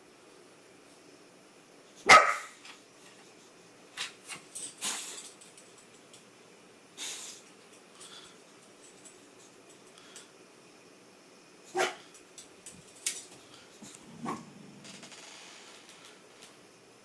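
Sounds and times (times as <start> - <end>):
dog barking: 2.0 - 2.6, 11.7 - 12.0.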